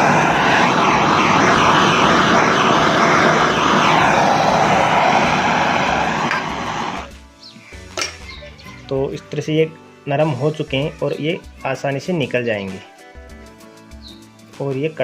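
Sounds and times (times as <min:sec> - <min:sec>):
gas torch flame hissing: 0:00.0 - 0:07.1.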